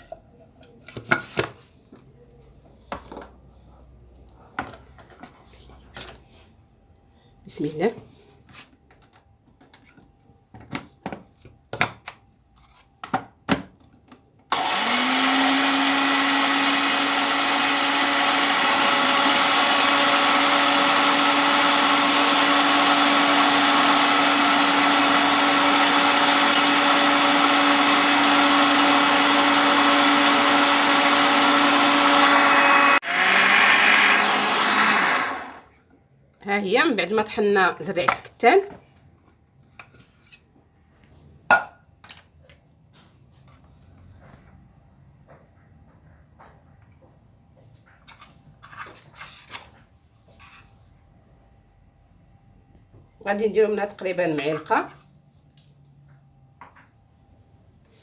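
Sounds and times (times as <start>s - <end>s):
electric grinder grinding seeds: 14.5s - 35.7s.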